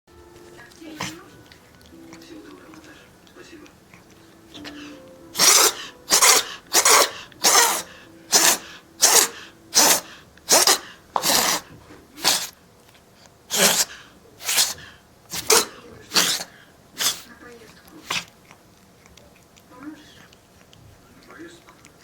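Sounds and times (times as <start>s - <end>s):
kitten sneezing: 4.5s - 12.6s, 13.5s - 17.3s, 18.0s - 18.3s.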